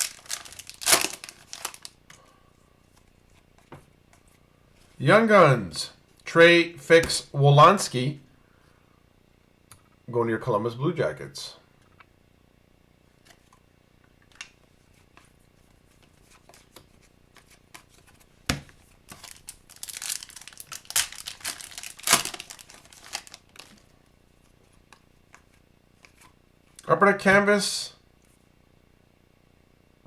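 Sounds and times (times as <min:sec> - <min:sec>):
foil wrapper tearing and crinkling: 0:00.0 - 0:02.0, 0:19.1 - 0:23.9.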